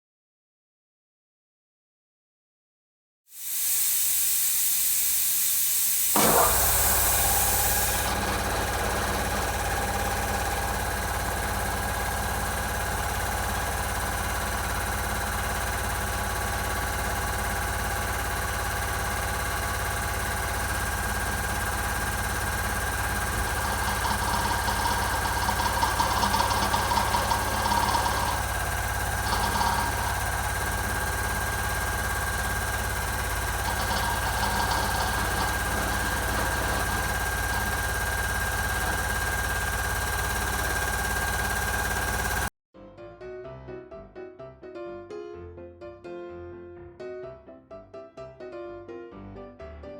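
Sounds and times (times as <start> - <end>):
air hiss: 3.4 - 8.9
air compressor running: 3.4 - 42.5.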